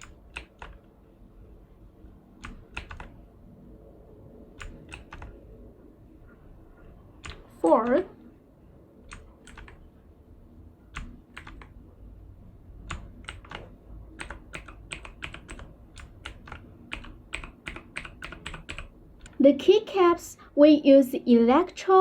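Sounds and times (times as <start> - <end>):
mechanical keyboard key clicks: 2.4 - 3.2, 4.6 - 5.3, 9.1 - 9.8, 10.9 - 11.8, 12.9 - 19.4.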